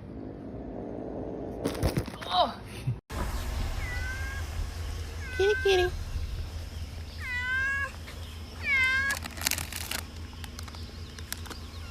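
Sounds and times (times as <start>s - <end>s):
cat meowing: 3.8s - 4.4s, 5.2s - 6.0s, 7.2s - 8.0s, 8.6s - 9.3s.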